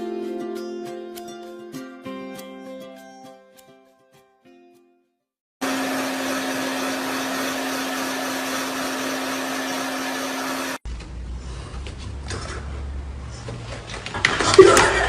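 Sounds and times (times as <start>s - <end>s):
appliance motor humming: 5.6s - 10.8s.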